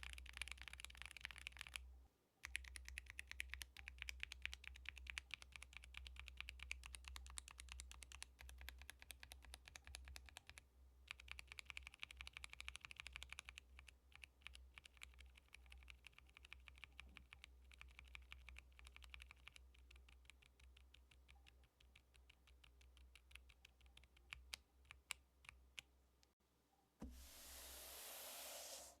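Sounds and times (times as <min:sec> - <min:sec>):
mechanical keyboard typing: 0:00.0 - 0:01.8, 0:02.4 - 0:25.8
short burst of hiss: 0:27.0 - 0:29.0.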